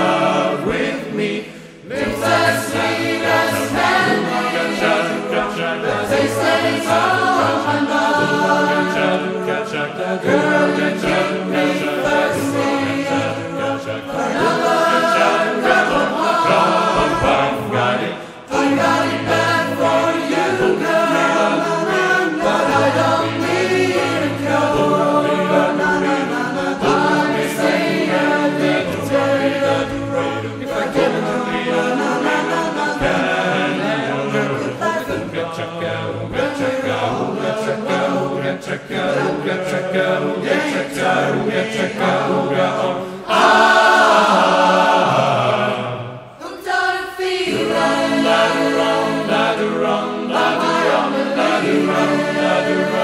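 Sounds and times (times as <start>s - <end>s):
choir-like singing with accompaniment: 0.0s - 53.0s.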